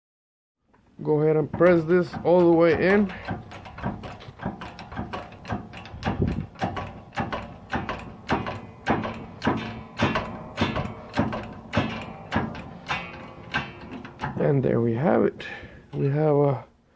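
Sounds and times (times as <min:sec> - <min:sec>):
press tool knocking: 0:01.2 - 0:14.8.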